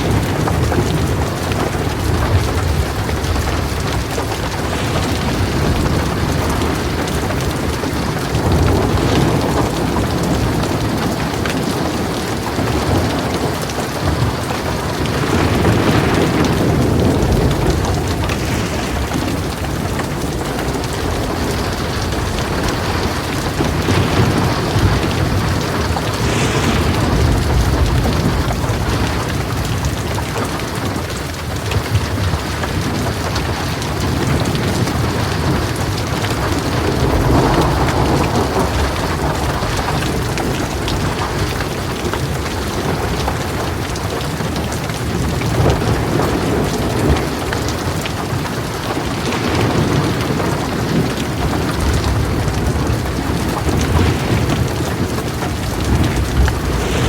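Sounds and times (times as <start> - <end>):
heavy rain pouring: 0.0 - 57.0
thunder rumbling: 0.0 - 57.0.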